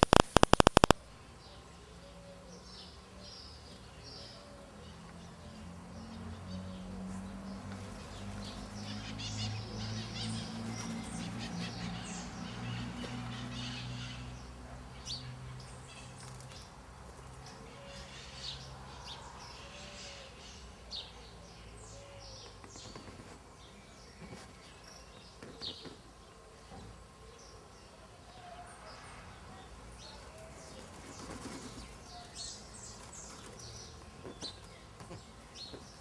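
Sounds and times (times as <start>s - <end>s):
birds chirping: 0.0s - 1.7s.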